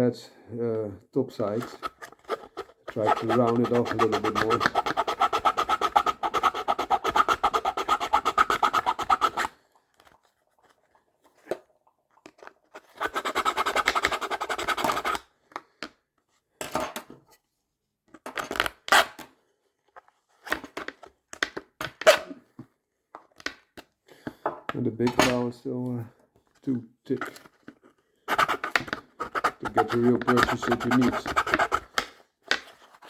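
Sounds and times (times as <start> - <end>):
short scrapes and knocks: 1.5 - 9.5, 27.2 - 33.0
hand file rasping on plastic: 1.5 - 9.6, 12.8 - 15.2, 28.3 - 33.0.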